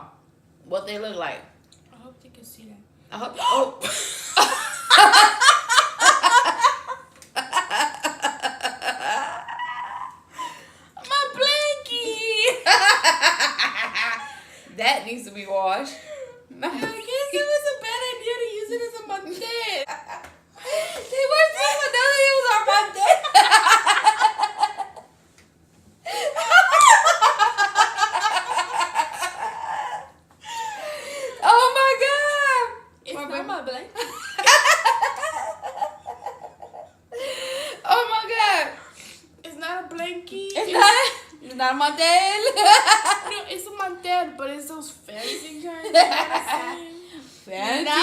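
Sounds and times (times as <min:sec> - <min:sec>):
loud hearty laughter: 0:03.8 - 0:10.2, 0:26.1 - 0:30.8.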